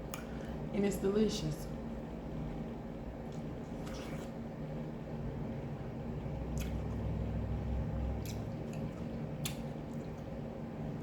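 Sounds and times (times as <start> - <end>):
wet chewing of watermelon: 3.2 - 4.4, 6.4 - 7.2, 8.1 - 10.4.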